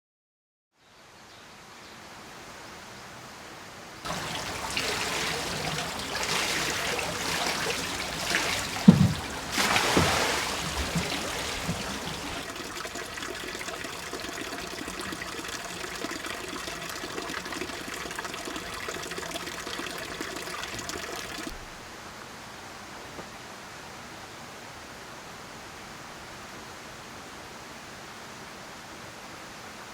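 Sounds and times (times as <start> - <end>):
waterfall splashing over rocks: 4.1 - 21.5
water gurgling plops: 4.1 - 21.6.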